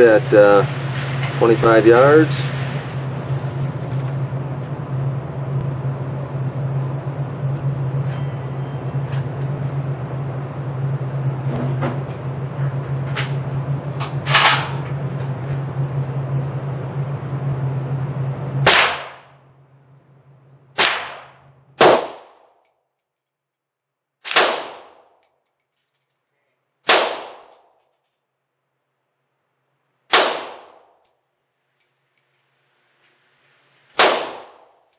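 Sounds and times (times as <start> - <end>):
steady low hum: 0.0 - 22.7, 23.8 - 34.9
rifle shots: 18.6 - 19.3, 20.8 - 22.5, 24.2 - 25.2, 26.8 - 27.7, 30.1 - 31.0, 34.0 - 34.8.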